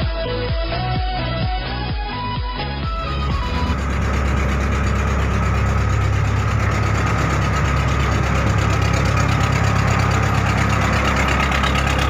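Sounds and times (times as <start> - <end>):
boat engine droning: 2.8 - 12.0
thin steady whine: 3.0 - 11.1.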